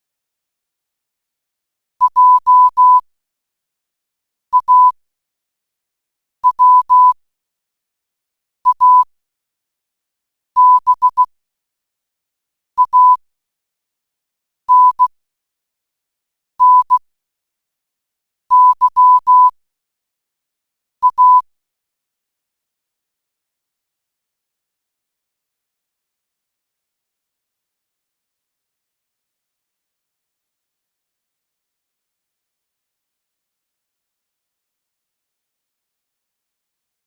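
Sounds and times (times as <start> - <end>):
morse code beeps: 2.0 - 3.0, 4.6 - 5.0, 6.4 - 7.2, 8.7 - 9.1, 10.6 - 11.3, 12.8 - 13.2, 14.7 - 15.1, 16.6 - 17.0, 18.5 - 19.5, 21.0 - 21.5.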